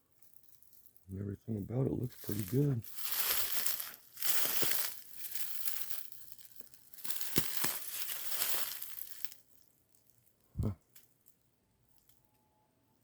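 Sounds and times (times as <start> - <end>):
footsteps crunching through dry leaves: 2.0 - 9.4.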